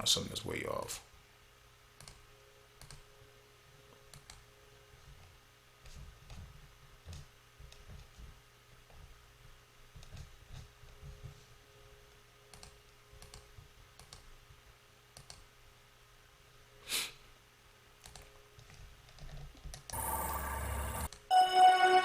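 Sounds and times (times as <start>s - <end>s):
computer mouse clicks: 2.0s - 2.2s, 2.8s - 3.0s, 4.1s - 4.4s, 12.5s - 14.3s, 15.2s - 15.5s, 18.0s - 20.0s
loud noisy sample: 20.0s - 22.0s
pitched music sample: 20.0s - 22.0s.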